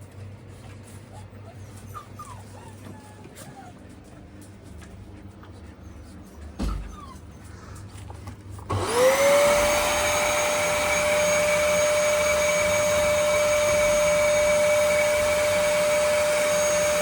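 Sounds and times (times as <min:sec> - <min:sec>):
vacuum cleaner whining: 0:08.6 - 0:17.0.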